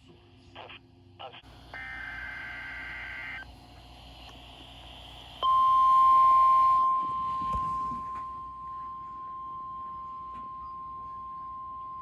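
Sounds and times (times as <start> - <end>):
faint radio hiss: 0.0 - 12.0
steady high alarm beep: 4.9 - 12.0.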